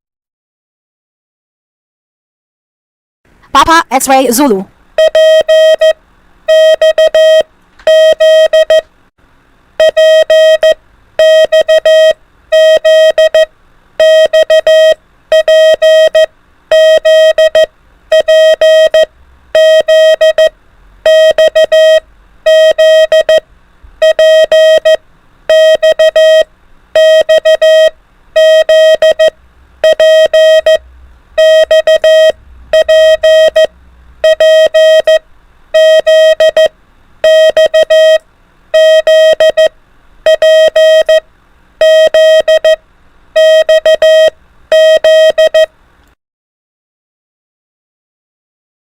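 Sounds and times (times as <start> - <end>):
morse code beeps: 5.0 - 8.8, 9.8 - 23.4, 24.0 - 30.8, 31.4 - 35.2, 35.8 - 38.2, 38.8 - 39.7, 40.3 - 41.2, 41.8 - 42.8, 43.4 - 45.7.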